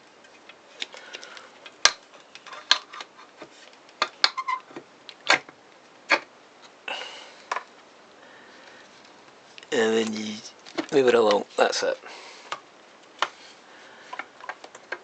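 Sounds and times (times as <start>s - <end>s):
plastic parts clicking: 0.2s - 6.3s, 9.0s - 11.4s, 14.1s - 15.0s.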